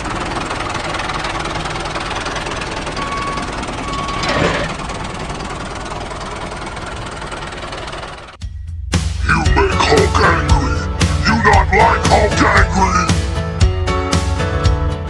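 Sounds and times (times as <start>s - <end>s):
small engine running: 0.0s - 8.4s
short high beeps: 3.0s - 4.6s.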